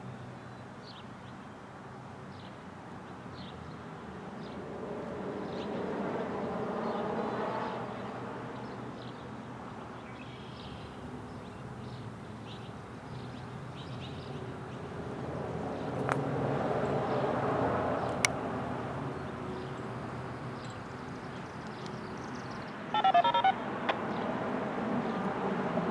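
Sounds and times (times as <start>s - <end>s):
small birds chirping: 10.3s - 22.7s
vehicle passing on road: 10.5s - 22.7s.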